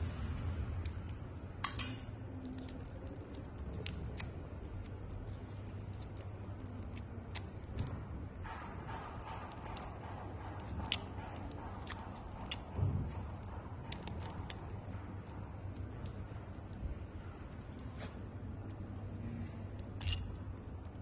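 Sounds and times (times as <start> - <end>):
low steady hum: 0.0 - 21.0
small tools clicking and snipping: 0.8 - 8.0, 19.7 - 21.0.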